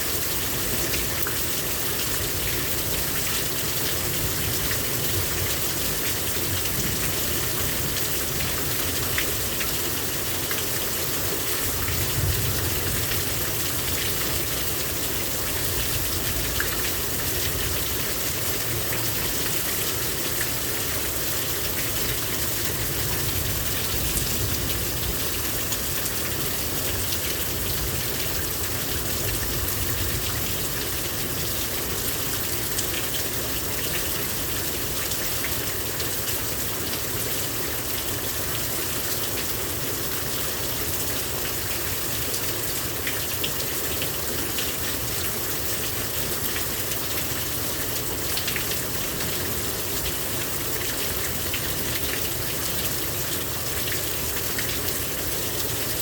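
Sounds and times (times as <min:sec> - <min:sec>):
heavy rain pouring: 0:00.0 - 0:56.0
water gushing: 0:00.0 - 0:56.0.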